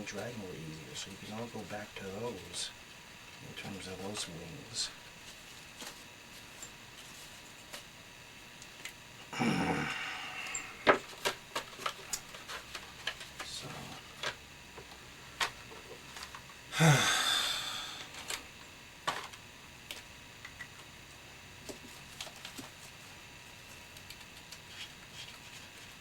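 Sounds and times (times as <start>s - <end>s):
person sighing: 9.3s - 10.9s, 16.7s - 18.1s.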